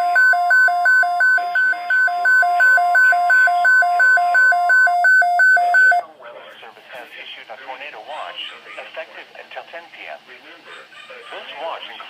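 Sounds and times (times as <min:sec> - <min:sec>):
electronic alarm beeping high and low: 0:00.0 - 0:06.0.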